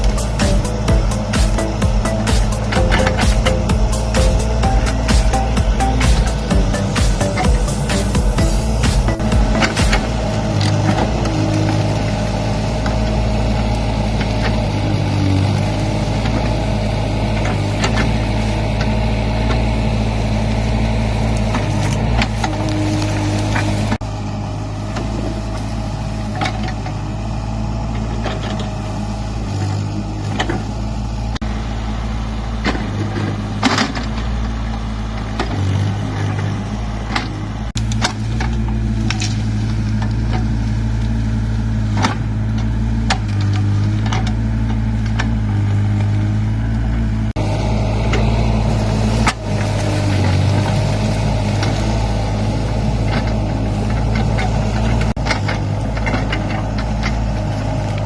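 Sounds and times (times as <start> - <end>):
machine knocks and clanks: 0.0 - 10.2
excavator engine running: 0.0 - 58.0.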